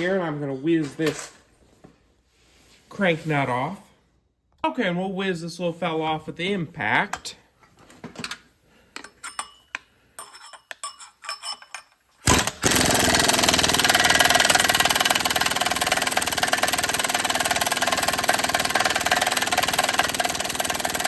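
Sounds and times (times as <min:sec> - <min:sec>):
pneumatic impact wrench hammering: 0:12.2 - 0:21.0.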